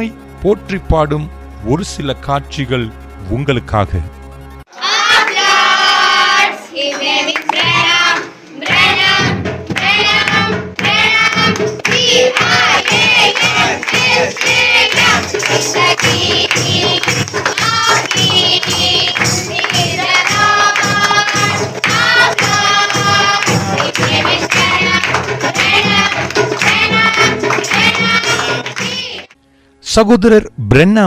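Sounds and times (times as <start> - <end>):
congregation singing: 4.7 - 29.4
steady percussive beat: 8.7 - 29.3
musical accompaniment: 8.8 - 29.4.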